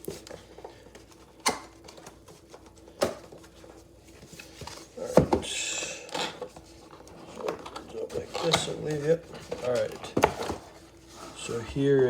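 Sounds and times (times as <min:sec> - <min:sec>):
packaging rustling: 0:06.2 - 0:11.8.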